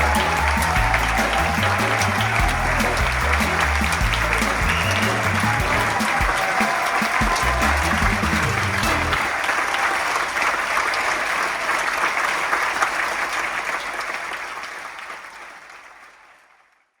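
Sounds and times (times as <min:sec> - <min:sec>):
music: 0:00.0 - 0:09.4
audience applauding: 0:00.0 - 0:17.0.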